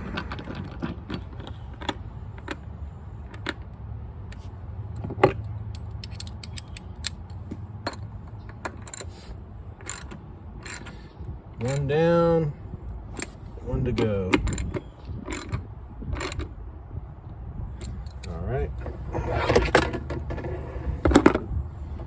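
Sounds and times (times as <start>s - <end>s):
hand ratchet clicking: 11.6s - 11.9s.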